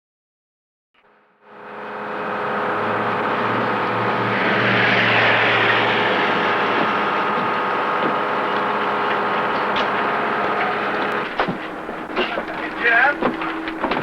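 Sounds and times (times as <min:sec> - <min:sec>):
vehicle engine and road noise: 0:01.0 - 0:14.0
constant hum: 0:02.1 - 0:14.0.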